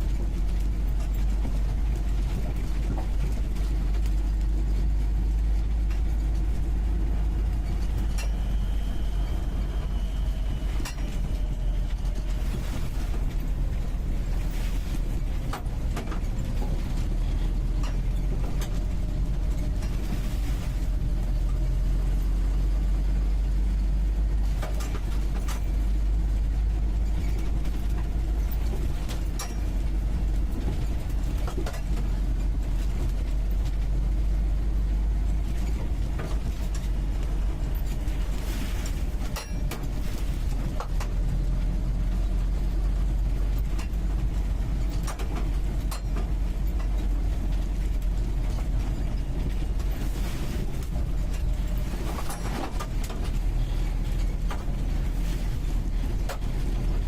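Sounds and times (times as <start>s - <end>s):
car engine running: 0.0s - 57.0s
sharp knocks and rattles: 10.8s - 20.4s, 26.8s - 33.9s, 35.3s - 50.1s.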